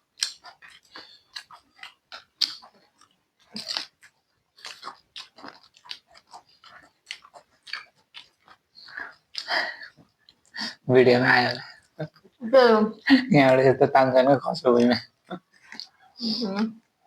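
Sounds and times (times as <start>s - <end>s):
chewing crunchy food: 0.0s - 12.4s, 14.8s - 17.0s
mouth clicks: 0.1s - 4.0s.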